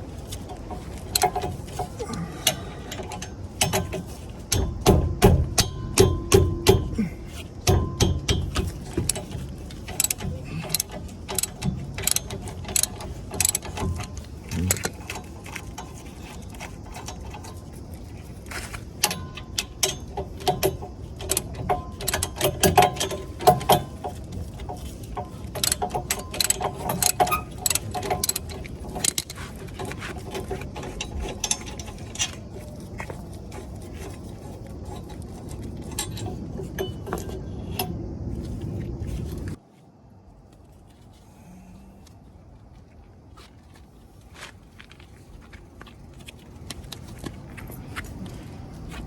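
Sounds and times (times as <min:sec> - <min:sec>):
metal clinks of tools: 0:00.3 - 0:17.7, 0:19.0 - 0:33.1, 0:34.9 - 0:38.0
socket ratchet clicking: 0:07.6 - 0:14.2, 0:19.0 - 0:32.4.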